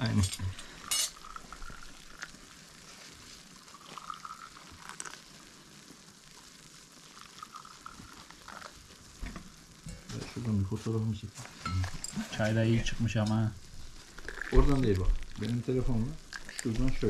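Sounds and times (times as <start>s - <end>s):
low steady hiss: 0.0s - 17.0s
tableware clinking: 0.1s - 1.6s, 11.6s - 12.4s.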